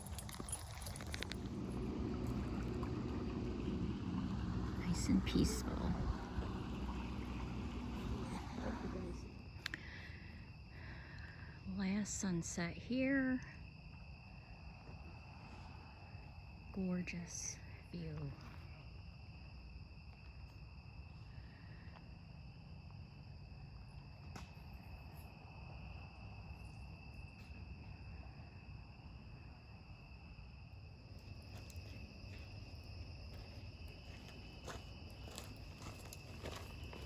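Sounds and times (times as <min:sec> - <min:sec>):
crickets chirping: 0:00.0 - 0:37.0.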